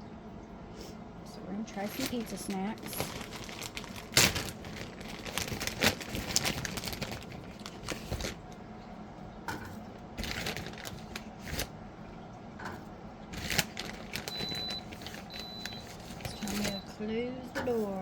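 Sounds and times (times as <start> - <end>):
plastic bag crinkling: 1.6 - 8.6, 10.2 - 11.7, 13.3 - 16.9.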